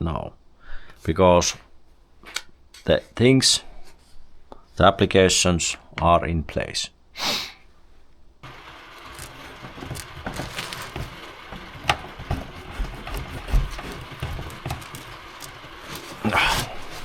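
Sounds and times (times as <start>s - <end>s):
clicks and knocks: 8.4s - 17.0s
rain hissing: 8.4s - 17.0s.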